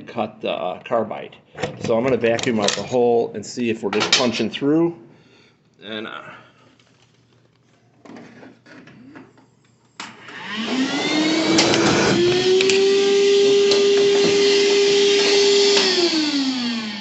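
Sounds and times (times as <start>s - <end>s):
vacuum cleaner motor whine: 10.0s - 17.0s.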